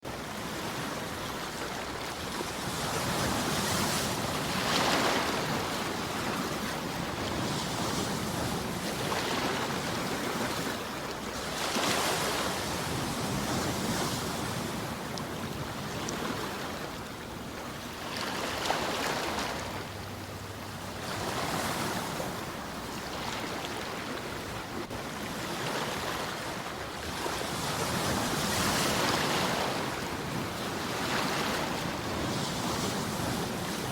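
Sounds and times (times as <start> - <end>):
ocean waves breaking: 0.1 - 33.9.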